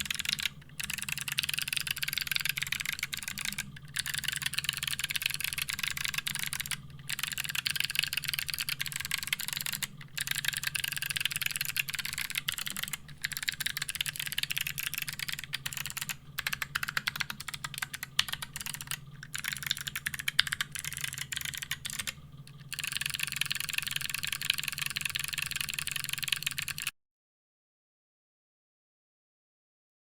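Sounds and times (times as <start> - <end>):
fast mechanical keyboard typing: 0.0 - 26.9.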